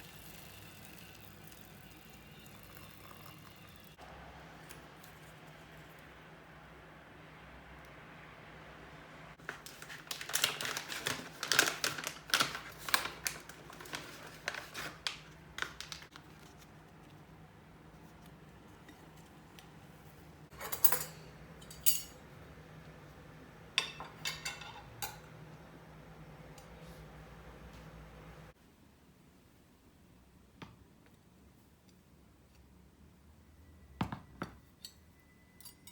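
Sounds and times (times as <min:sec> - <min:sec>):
utensils and dishes clattering: 0:20.5 - 0:22.3, 0:23.8 - 0:25.4.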